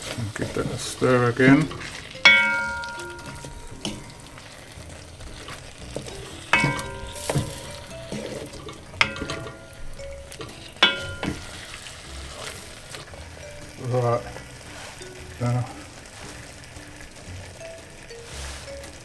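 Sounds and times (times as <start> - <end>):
curry sizzling in pot: 0.0 - 19.0
spoon clinking on cooking pot: 1.6 - 13.8.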